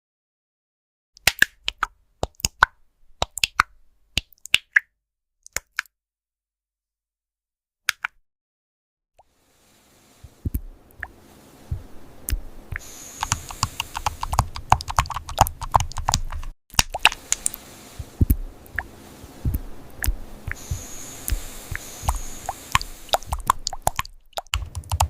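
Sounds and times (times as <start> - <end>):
typing on computer keyboard: 13.2 - 17.4, 23.2 - 25.0.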